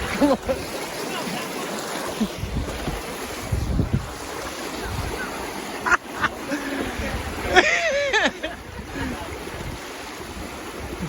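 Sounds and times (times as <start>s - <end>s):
rushing stream water: 0.0s - 11.0s
wind buffeting microphone: 2.2s - 5.5s, 6.2s - 11.0s.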